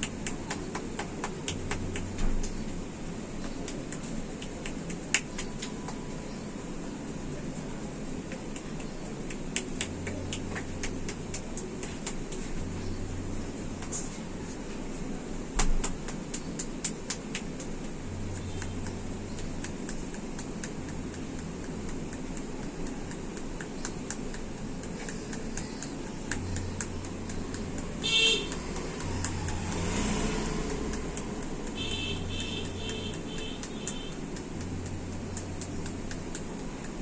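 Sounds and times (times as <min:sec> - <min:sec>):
street traffic noise: 0:00.0 - 0:37.0
open-palm slaps on head: 0:03.4 - 0:06.0, 0:08.3 - 0:12.5, 0:15.6 - 0:18.0
vehicle horn toot: 0:28.0 - 0:28.5, 0:31.8 - 0:34.1.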